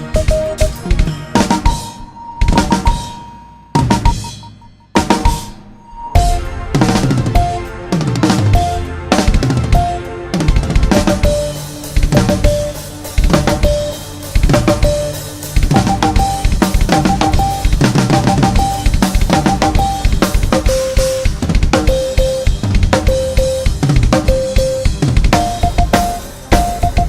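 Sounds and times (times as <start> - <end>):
morse code beeps: 0.0 - 6.4, 15.7 - 20.7, 21.8 - 23.7, 24.3 - 27.0
drum kit beat: 0.0 - 27.0.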